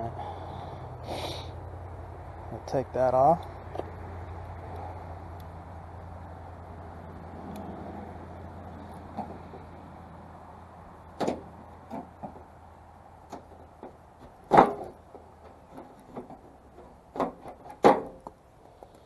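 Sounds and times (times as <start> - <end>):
metal knocks and clunks: 11.1 - 12.5, 13.3 - 18.4.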